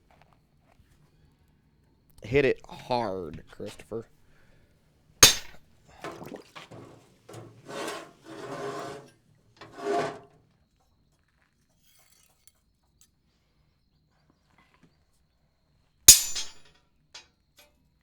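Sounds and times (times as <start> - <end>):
scraping strokes: 5.2 - 5.6, 6.7 - 10.3.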